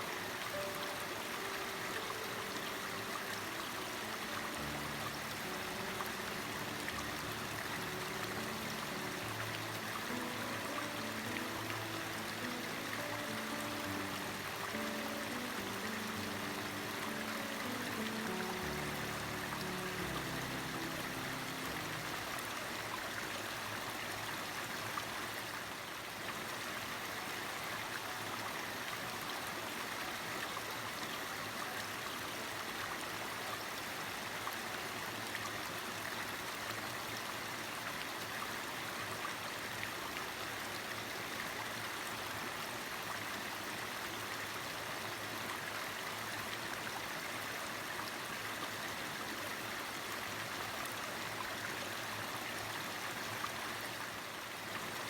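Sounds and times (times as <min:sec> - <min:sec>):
stream flowing over rocks: 0:00.0 - 0:55.0.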